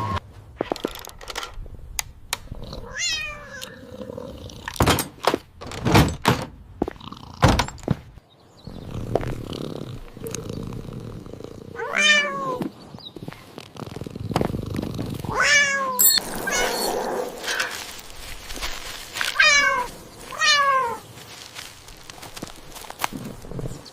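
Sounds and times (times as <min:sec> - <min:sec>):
cat meowing: 0:02.8 - 0:03.8, 0:11.8 - 0:12.6, 0:15.3 - 0:17.8, 0:19.3 - 0:21.0.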